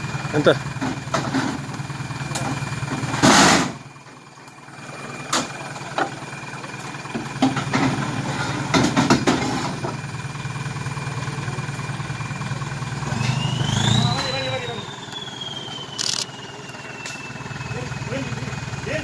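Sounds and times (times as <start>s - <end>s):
off-road vehicle engine running: 0.0s - 19.0s
sharp clunks: 7.4s - 10.0s
high whine rising in pitch: 13.0s - 18.0s.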